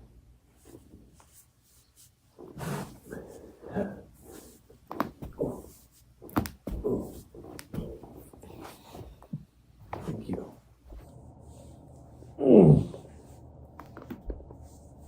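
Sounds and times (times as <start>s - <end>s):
spine joints cracking: 6.2s - 8.6s.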